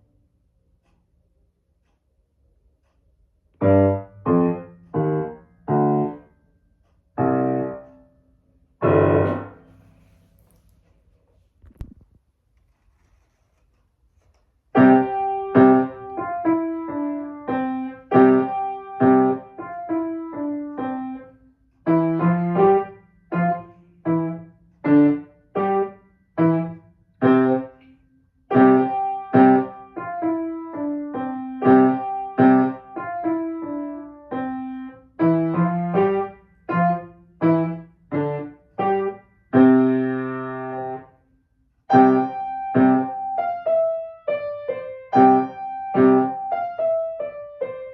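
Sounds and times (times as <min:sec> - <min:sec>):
piano piece: 0:03.6 - 0:06.3, 0:07.2 - 0:08.0, 0:08.8 - 0:10.6, 0:14.7 - 0:27.9, 0:28.5 - 0:41.1, 0:41.9 - 0:47.9.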